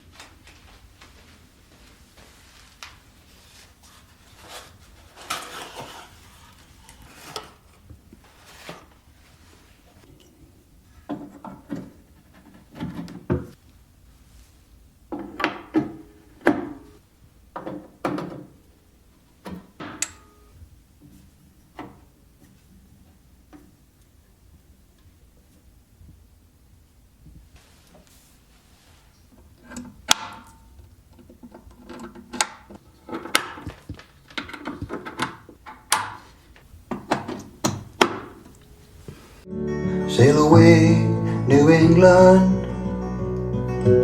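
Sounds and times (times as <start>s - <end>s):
knocks clicks and rubbing: 29.4s - 38.7s.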